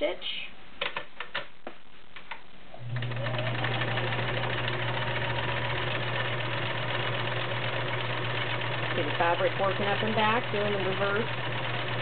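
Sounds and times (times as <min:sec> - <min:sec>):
sewing machine running: 0:02.8 - 0:12.0.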